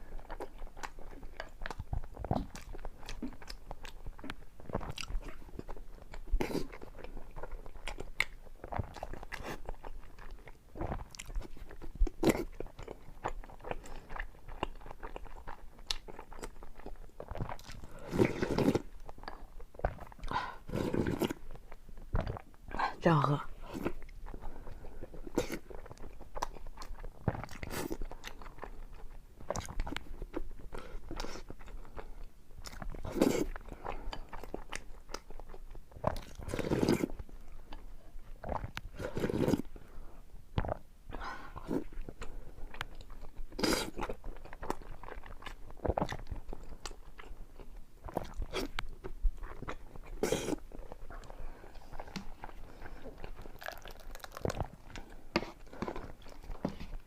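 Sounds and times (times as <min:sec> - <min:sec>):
person chewing: 0:00.0 - 0:22.6, 0:23.6 - 0:57.0
person sipping soup: 0:10.8 - 0:28.8, 0:30.6 - 0:37.8, 0:38.4 - 0:47.4, 0:48.1 - 0:57.0.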